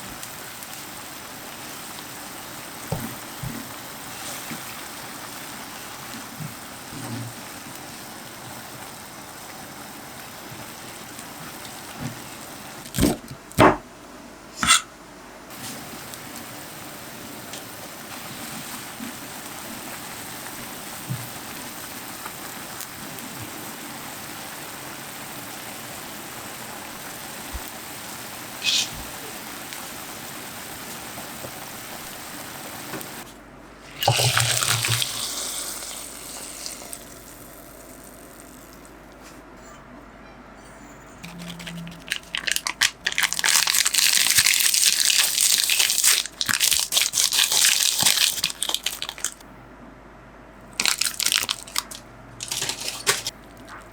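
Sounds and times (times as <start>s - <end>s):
tap running into sink: 34.0s - 35.2s.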